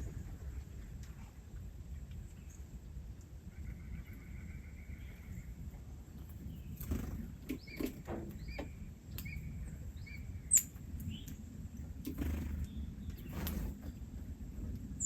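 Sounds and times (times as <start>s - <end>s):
small birds chirping: 3.5s - 15.0s.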